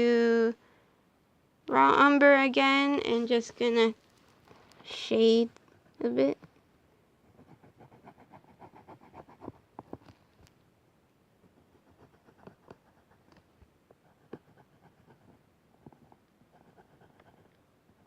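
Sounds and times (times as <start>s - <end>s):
marker scratching on paper: 7.3s - 10.0s, 11.6s - 13.3s, 14.0s - 17.5s.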